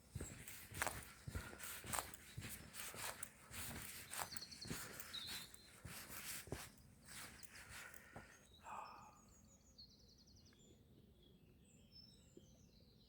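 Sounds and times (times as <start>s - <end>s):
faint footsteps on path: 0.0s - 8.4s
songbirds chirping: 0.0s - 13.0s.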